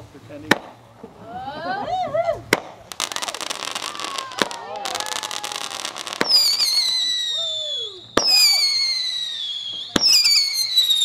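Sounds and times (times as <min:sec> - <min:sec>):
firework crackle: 0:00.0 - 0:11.0
firework bangs: 0:00.4 - 0:01.2, 0:02.4 - 0:11.0
firework whistle sliding down: 0:03.4 - 0:11.0.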